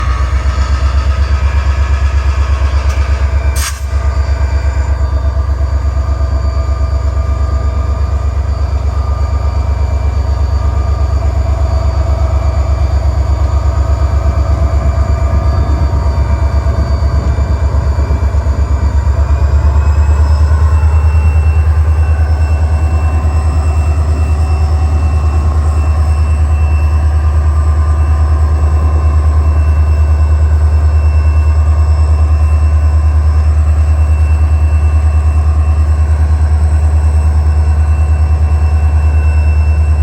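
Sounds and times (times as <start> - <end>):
diesel locomotive engine rumbling: 0.0 - 40.0.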